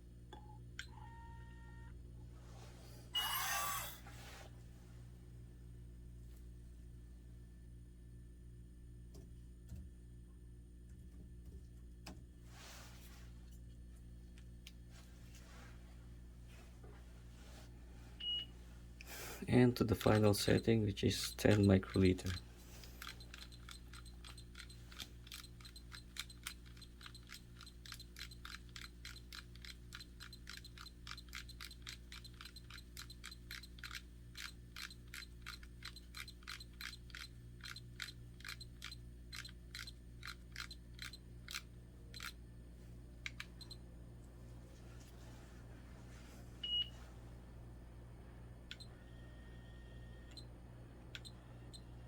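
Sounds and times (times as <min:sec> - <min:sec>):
low electrical hum: 0:00.0 - 0:52.0
small light clicks: 0:19.9 - 0:42.4, 0:43.2 - 0:44.3, 0:50.3 - 0:51.8.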